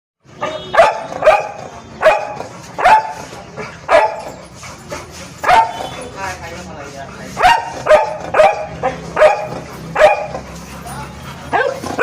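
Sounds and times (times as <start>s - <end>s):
dog barking: 0.4s - 4.4s, 5.4s - 6.0s, 7.4s - 10.5s, 11.5s - 12.0s.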